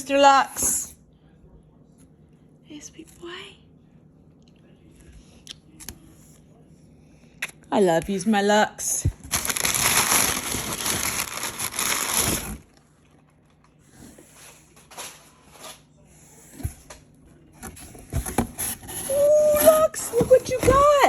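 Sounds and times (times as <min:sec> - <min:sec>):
packing material rustling: 0:09.2 - 0:12.7.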